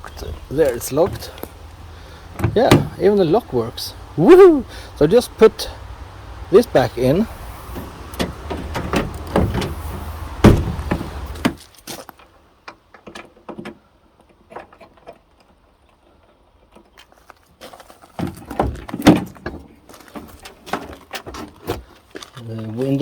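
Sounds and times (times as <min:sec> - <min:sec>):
car door hardware clicking and rattling: 0:02.3 - 0:03.0, 0:07.8 - 0:09.8, 0:10.4 - 0:11.6.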